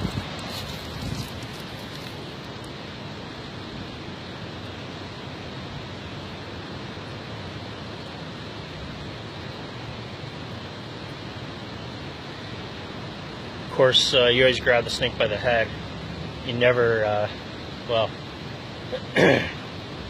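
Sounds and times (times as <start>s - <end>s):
steady rushing noise: 0.0s - 20.0s.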